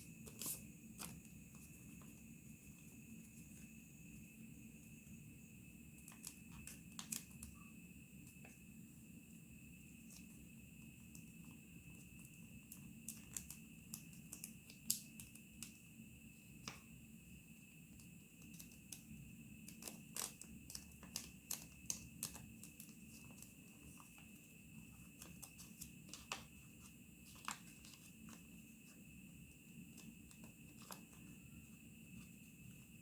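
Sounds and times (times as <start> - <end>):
paper being folded by hand: 0.0 - 3.7, 6.0 - 7.6, 17.9 - 33.0
faint steady hum: 0.0 - 33.0.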